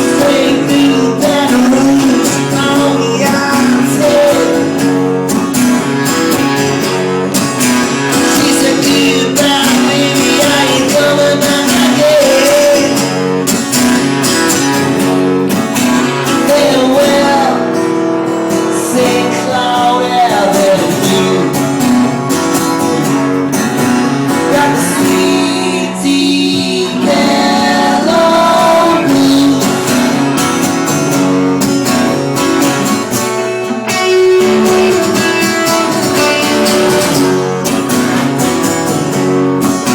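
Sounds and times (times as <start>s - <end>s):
person singing: 0.0s - 4.9s, 8.0s - 13.2s, 16.2s - 21.7s, 24.3s - 30.4s, 33.8s - 37.4s
blues acoustic guitar: 0.0s - 39.9s.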